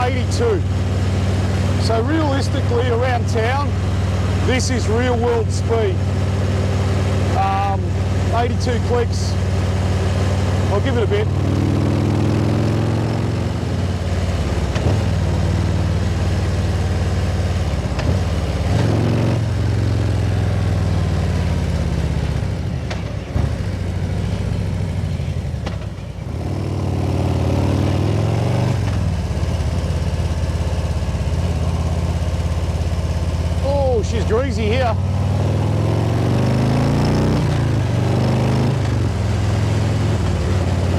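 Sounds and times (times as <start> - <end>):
motorcycle engine running: 0.0 - 40.9.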